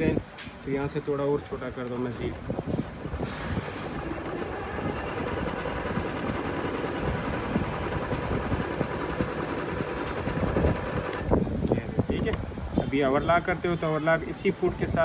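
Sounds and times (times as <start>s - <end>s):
sewing machine running: 2.8s - 11.3s.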